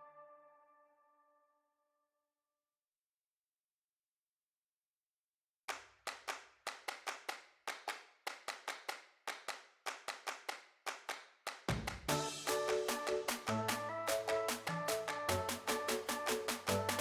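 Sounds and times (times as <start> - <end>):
sharp claps or percussion hits: 5.7 - 17.0
background music: 12.1 - 17.0.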